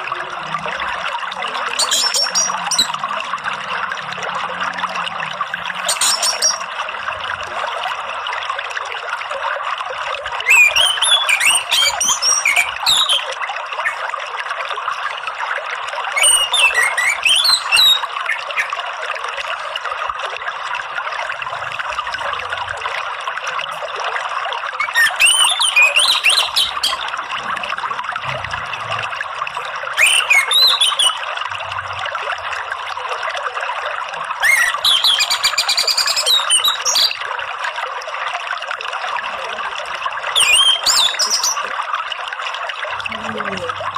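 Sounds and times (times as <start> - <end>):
water trickling: 0.0 - 43.9
thrush chirping song: 5.8 - 6.7, 16.2 - 18.8, 24.8 - 27.2, 30.0 - 31.3.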